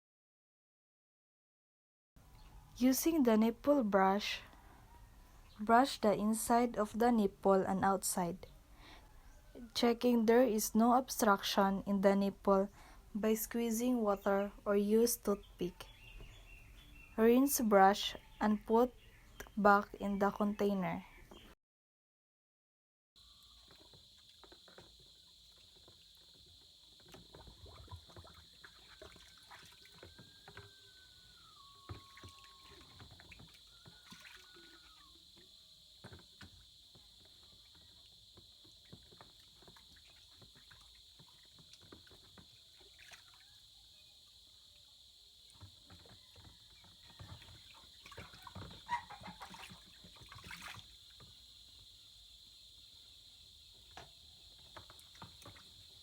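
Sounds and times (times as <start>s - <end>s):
steady high-pitched hiss: 23.2s - 29.2s, 30.0s - 56.0s.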